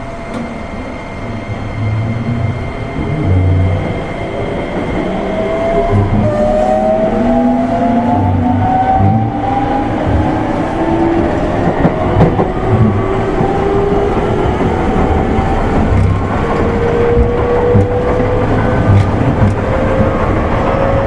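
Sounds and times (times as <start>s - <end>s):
electric train motors whining: 0.0s - 21.0s
rail-joint clatter: 0.2s - 1.0s, 8.3s - 21.0s
wheel rumble: 8.0s - 21.0s.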